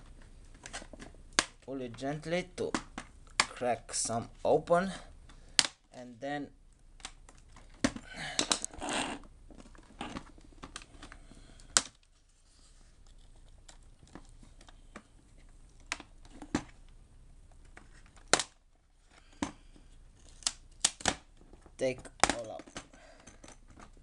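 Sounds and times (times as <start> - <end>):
plastic clips snapping: 5.6 - 5.9, 20.2 - 21.3
rustling: 7.2 - 24.0.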